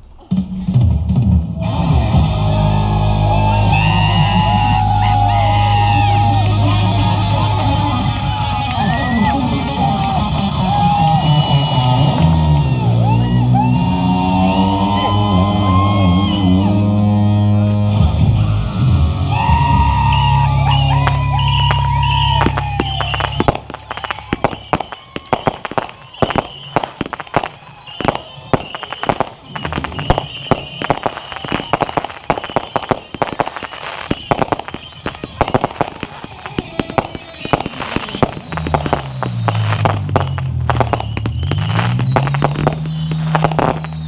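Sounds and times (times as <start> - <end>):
rock music with electric guitar: 0.3 - 10.8, 16.7 - 21.2.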